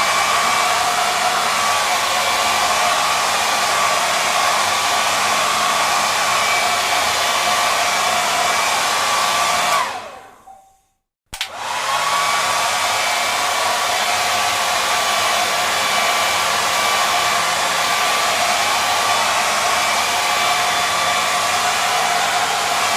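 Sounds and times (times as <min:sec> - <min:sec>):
hair dryer running: 0:00.0 - 0:10.6, 0:11.4 - 0:22.9
hair dryer switch click: 0:11.4 - 0:11.7.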